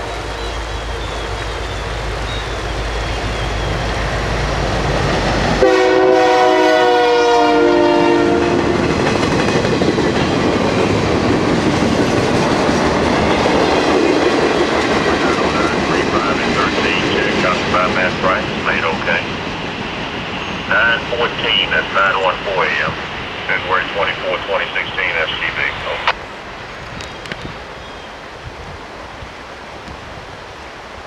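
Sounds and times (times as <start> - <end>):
locomotive engine hum: 0.0 - 28.4
train air horn blast: 5.6 - 8.9
wheels clattering on rails: 8.9 - 17.0.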